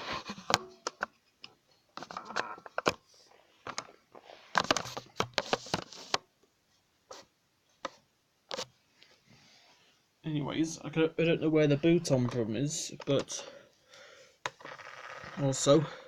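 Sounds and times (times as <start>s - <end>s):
plastic toy car being handled: 0.0s - 6.3s, 14.4s - 15.6s.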